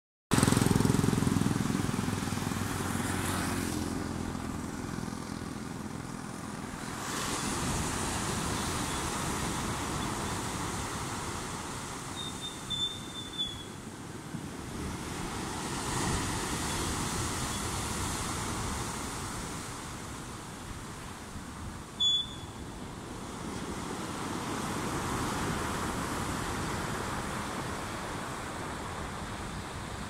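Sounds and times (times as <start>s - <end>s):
high chirp: 12.2s - 13.8s, 22.0s - 22.6s.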